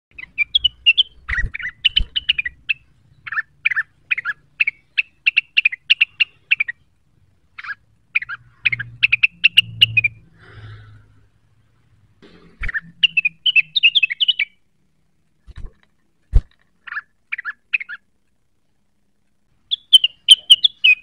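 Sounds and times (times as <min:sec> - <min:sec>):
songbird chattering: 0:00.1 - 0:06.9, 0:07.5 - 0:10.3, 0:12.7 - 0:14.6, 0:16.8 - 0:18.1, 0:19.7 - 0:21.0.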